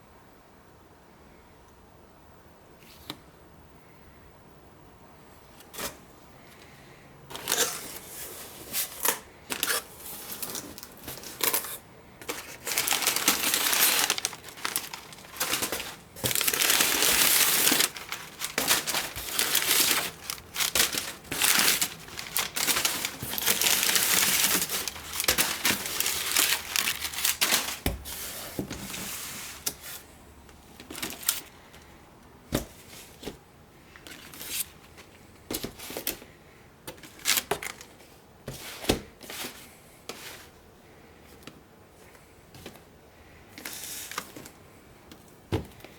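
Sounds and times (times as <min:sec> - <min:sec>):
plastic packaging crinkling: 0:07.3 - 0:29.8, 0:30.8 - 0:31.6.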